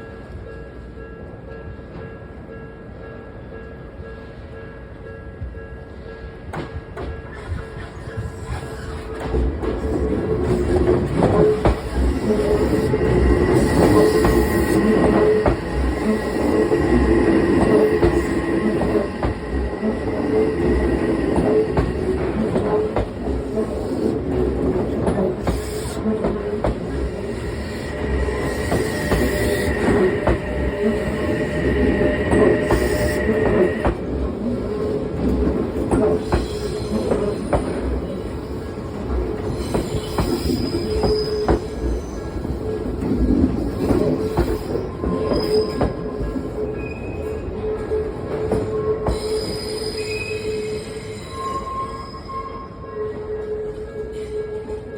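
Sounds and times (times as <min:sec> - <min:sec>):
train wheels clattering: 0:06.5 - 0:47.0
high steady wheel squeal: 0:07.4 - 0:35.0, 0:39.4 - 0:42.6, 0:44.1 - 0:47.6, 0:48.5 - 0:54.5
crossing alarm dinging: 0:10.1 - 0:34.3.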